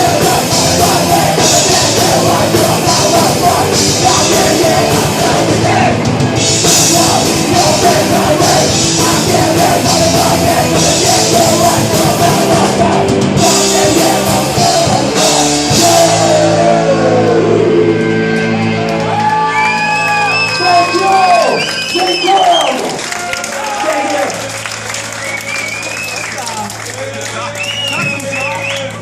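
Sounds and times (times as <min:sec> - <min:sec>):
rock vocals: 0:00.0 - 0:19.0
drum kit: 0:00.0 - 0:19.3
distorted guitars: 0:00.0 - 0:19.6.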